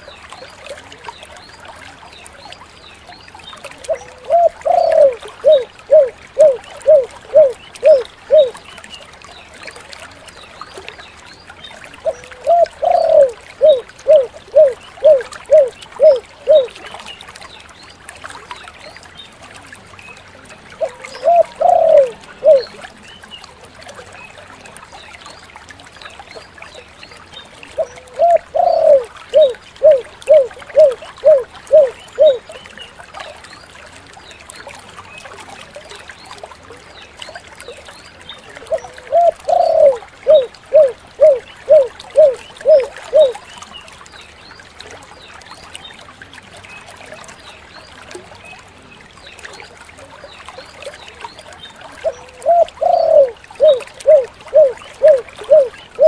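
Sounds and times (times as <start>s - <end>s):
dove cooing: 3.9s - 8.5s, 12.0s - 16.8s, 20.8s - 22.7s, 27.8s - 32.4s, 38.7s - 43.4s, 52.0s - 56.0s.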